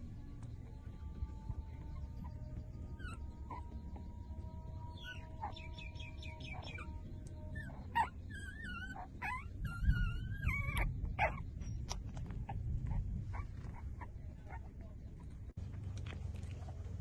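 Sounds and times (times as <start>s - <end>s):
puppies squeaking and whimpering: 1.8s - 15.3s.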